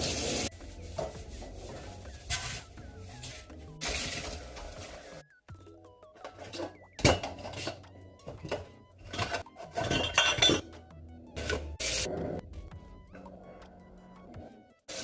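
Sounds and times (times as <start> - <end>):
dishes and cutlery clattering: 6.2 - 10.8.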